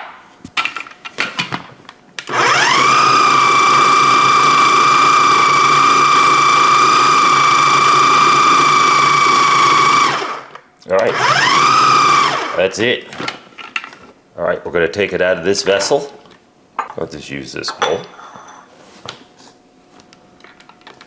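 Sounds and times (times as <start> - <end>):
food processor motor whine: 2.3 - 12.6.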